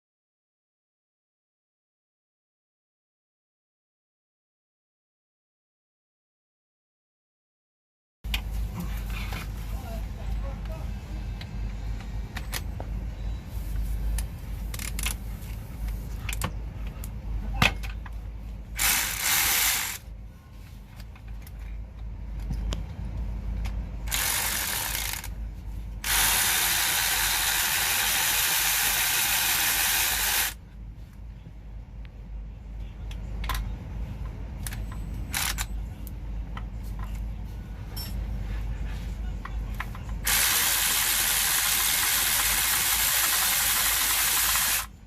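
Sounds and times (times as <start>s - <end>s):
power ratchet running: 18.8s - 20.0s, 24.1s - 25.4s, 26.0s - 30.6s, 35.3s - 35.6s, 40.2s - 44.9s.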